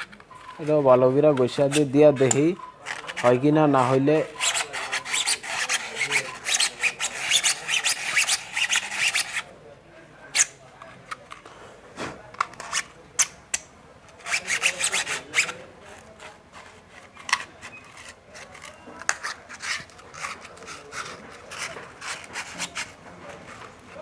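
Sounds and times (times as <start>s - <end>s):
sandpaper scratching metal: 1.6s - 9.4s, 14.2s - 15.6s, 19.1s - 24.0s.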